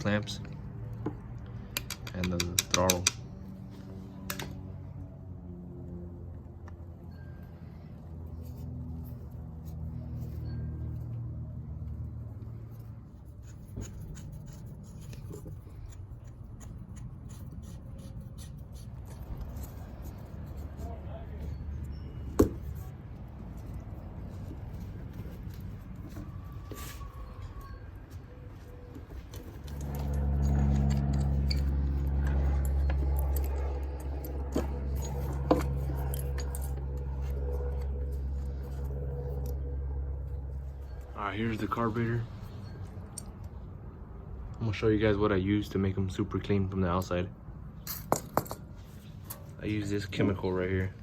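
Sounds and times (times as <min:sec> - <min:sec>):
hand tools clicking and scraping: 0:00.3 - 0:04.6, 0:08.3 - 0:43.6
sharp metallic clicks: 0:01.7 - 0:03.3
low hum: 0:03.2 - 0:44.9.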